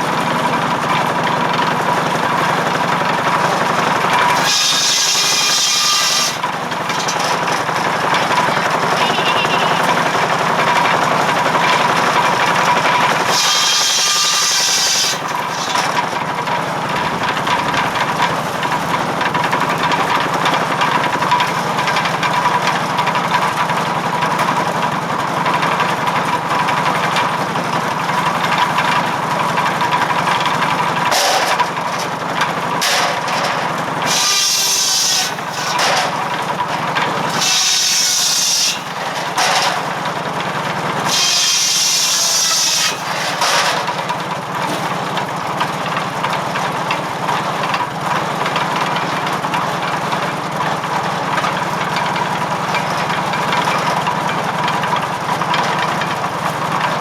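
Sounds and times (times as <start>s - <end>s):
tractor engine running: 0.0s - 13.3s, 14.8s - 38.2s, 38.8s - 57.0s
saw blade whining: 0.0s - 21.9s, 26.2s - 46.1s
saw cutting logs: 0.0s - 57.0s.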